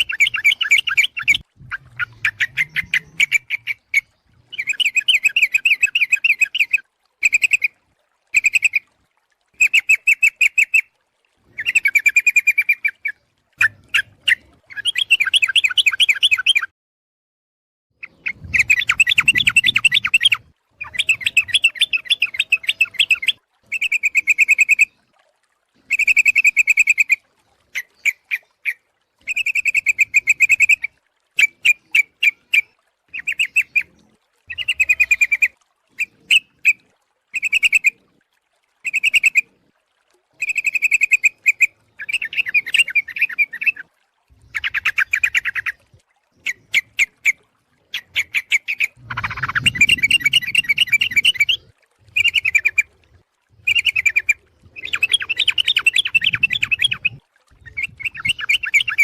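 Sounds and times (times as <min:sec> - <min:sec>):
bulbul calls: 0:00.0 - 0:07.7, 0:18.0 - 0:24.9, 0:53.6 - 0:59.0.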